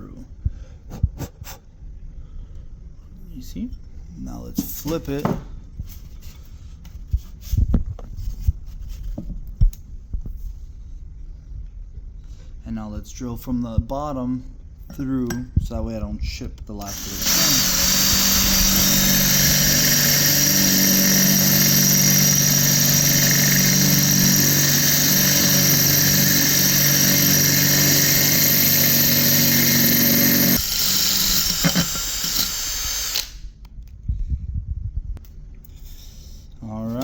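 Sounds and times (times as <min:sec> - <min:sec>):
drill grinding through tile: 0:16.8 - 0:33.5.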